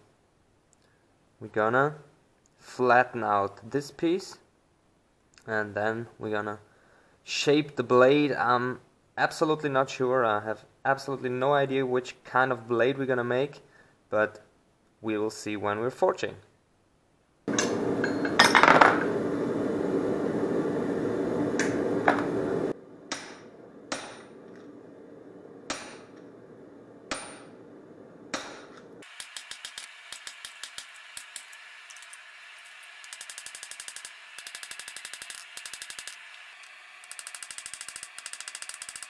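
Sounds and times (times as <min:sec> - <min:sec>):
hammer striking steel: 0:23.1 - 0:24.4, 0:25.7 - 0:26.2, 0:27.1 - 0:27.6, 0:28.3 - 0:31.6
rapid clicking: 0:33.0 - 0:36.2.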